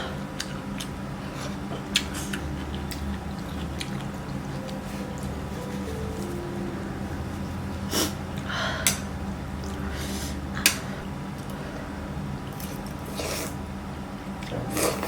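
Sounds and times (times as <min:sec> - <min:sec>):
steady low hum: 0:00.0 - 0:15.0
wet chewing and biting: 0:00.4 - 0:06.5.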